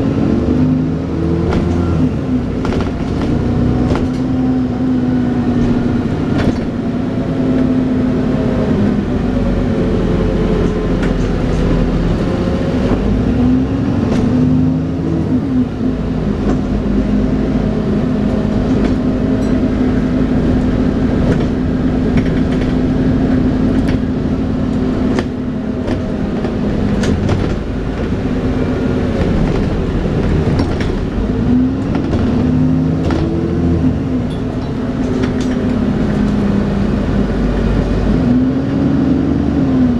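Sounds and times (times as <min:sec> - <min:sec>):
bus engine drone and whine: 0:00.0 - 0:39.9
rattles and knocks: 0:01.4 - 0:01.9, 0:02.6 - 0:04.5, 0:05.4 - 0:07.8, 0:18.2 - 0:36.8.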